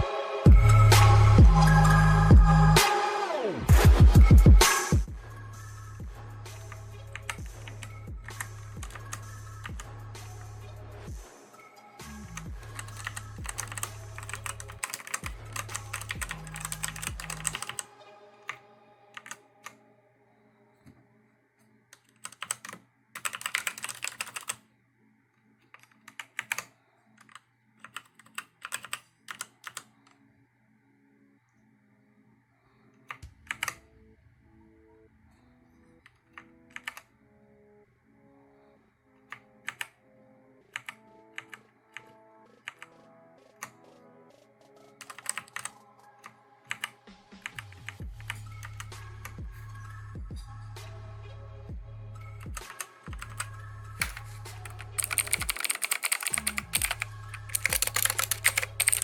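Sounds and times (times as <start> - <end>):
electronic music: 0.0 - 20.1, 39.7 - 59.0
heavy bass and kick drum: 0.5 - 1.6, 2.3 - 2.6, 3.7 - 5.3
mechanical keyboard keystrokes: 12.8 - 17.8, 22.0 - 24.6, 25.7 - 29.9, 36.4 - 37.0, 45.0 - 45.7, 52.6 - 59.0.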